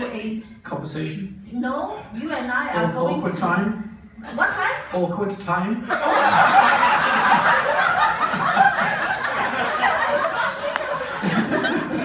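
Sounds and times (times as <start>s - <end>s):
crowd laughing: 5.8s - 12.0s.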